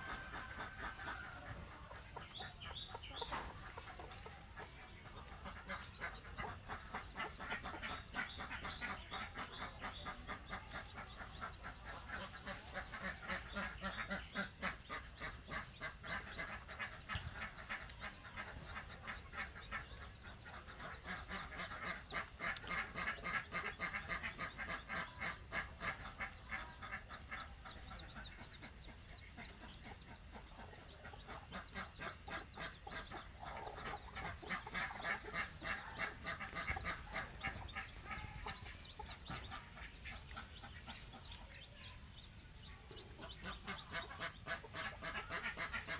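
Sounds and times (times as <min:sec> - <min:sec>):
ducks quacking: 0:00.0 - 0:45.9.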